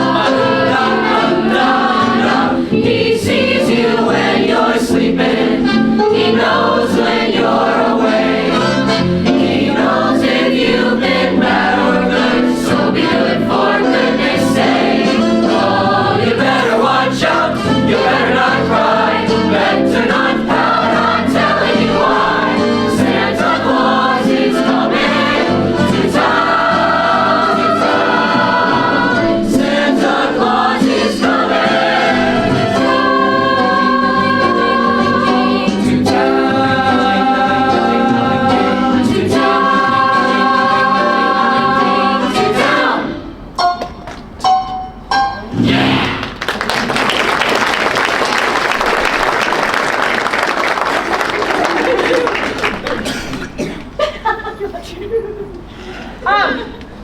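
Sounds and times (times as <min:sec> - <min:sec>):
mixed choir singing in harmony: 0:00.0 - 0:43.5.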